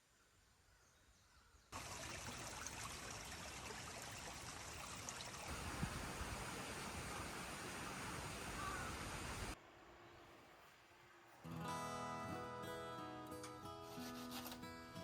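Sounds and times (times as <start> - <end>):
steady rushing outdoor noise: 5.5 - 11.5.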